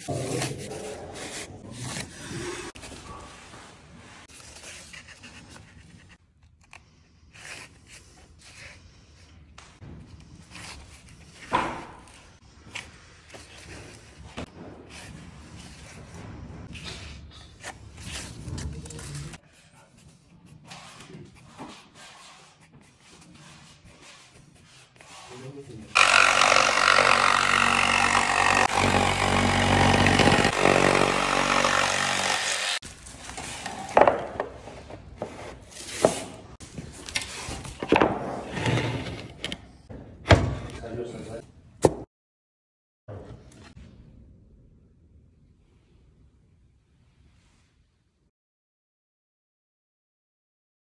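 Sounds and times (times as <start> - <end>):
electric saw cutting wood: 26.0 - 32.8.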